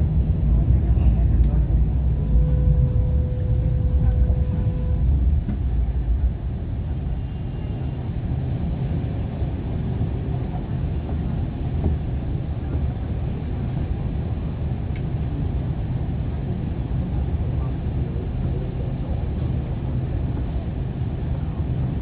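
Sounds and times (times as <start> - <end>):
wheels rumbling on track: 0.0 - 7.2
brief tone: 1.8 - 6.0.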